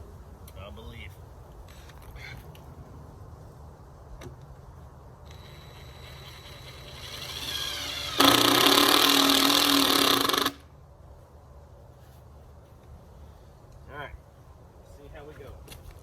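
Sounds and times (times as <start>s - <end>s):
power tool motor winding up: 5.3s - 10.6s.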